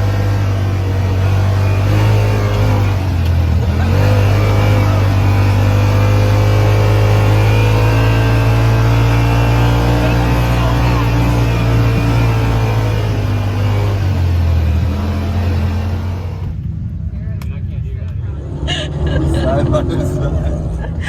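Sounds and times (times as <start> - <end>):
vehicle engine running hard: 0.0 - 21.0.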